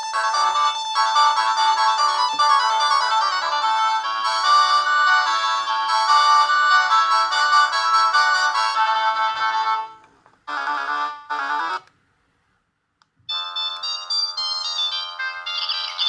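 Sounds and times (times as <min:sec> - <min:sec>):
phone ringtone melody: 0:00.0 - 0:11.9, 0:13.3 - 0:16.0.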